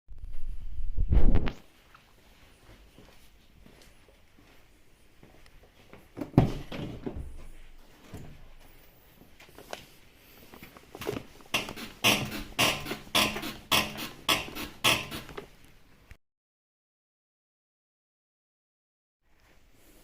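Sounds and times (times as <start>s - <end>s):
car axle squeaking: 11.6s - 15.4s.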